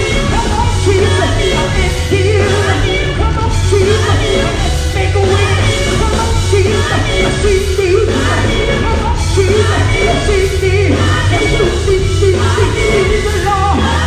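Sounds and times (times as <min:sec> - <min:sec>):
band playing: 0:00.0 - 0:14.0
gospel group singing: 0:00.0 - 0:14.0
steady bass line: 0:00.0 - 0:14.0.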